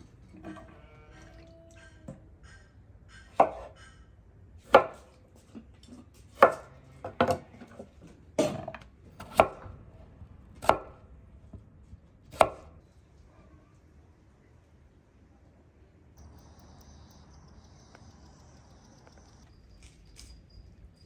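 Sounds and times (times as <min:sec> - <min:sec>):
knife chopping on cutting board: 0:03.1 - 0:03.8, 0:12.3 - 0:12.7.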